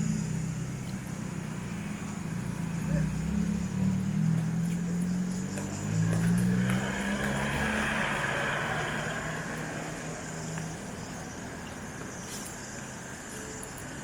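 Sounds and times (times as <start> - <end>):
vehicle driving past: 1.5 - 11.2.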